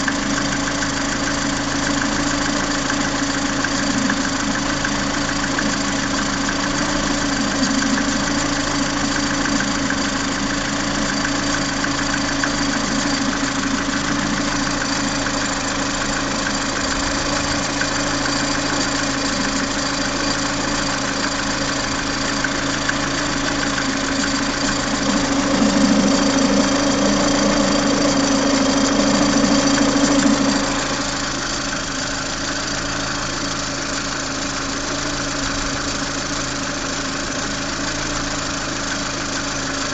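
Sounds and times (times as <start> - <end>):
car engine knocking: 0.0 - 39.9.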